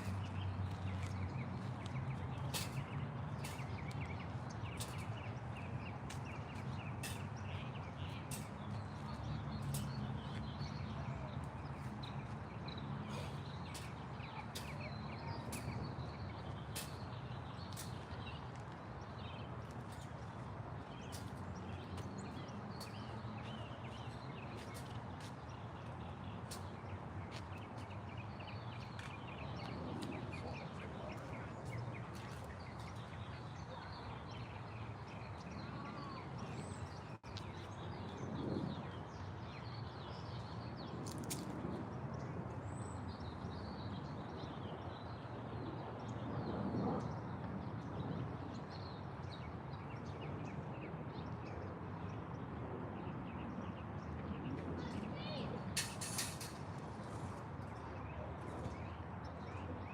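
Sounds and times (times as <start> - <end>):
small birds chirping: 0.0 - 41.8.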